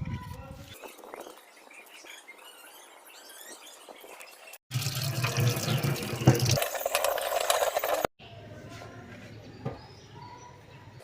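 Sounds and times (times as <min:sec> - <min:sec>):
water running from a tap: 0:04.7 - 0:08.1.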